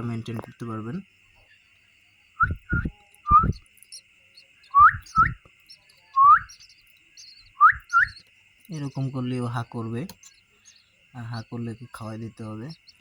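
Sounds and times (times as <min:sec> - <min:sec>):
person whistling short rising whistles: 0:02.4 - 0:03.6, 0:04.7 - 0:05.4, 0:06.2 - 0:06.5, 0:07.6 - 0:08.2.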